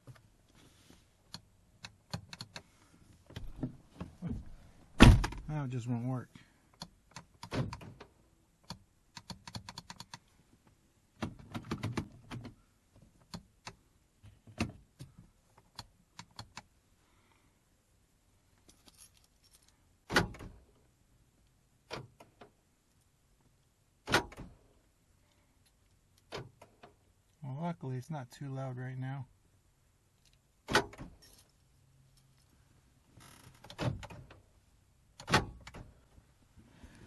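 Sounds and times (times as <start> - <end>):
keys jangling and clicking: 18.7 - 19.8, 31.2 - 32.5
door lock clunks: 24.0 - 24.5, 35.2 - 35.8.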